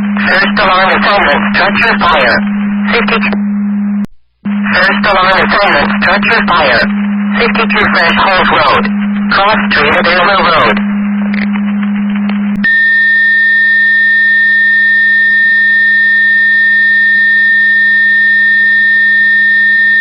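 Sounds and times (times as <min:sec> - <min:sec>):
high radio alert tone: 0:00.0 - 0:03.4, 0:04.5 - 0:11.0, 0:12.6 - 0:20.0
constant low hum: 0:00.0 - 0:20.0
radio hiss: 0:00.1 - 0:03.4, 0:04.2 - 0:10.8.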